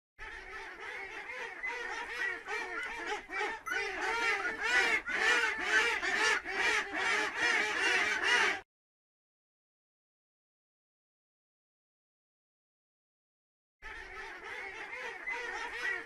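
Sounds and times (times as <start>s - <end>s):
ducklings calling: 0.3s - 8.6s, 13.9s - 16.0s.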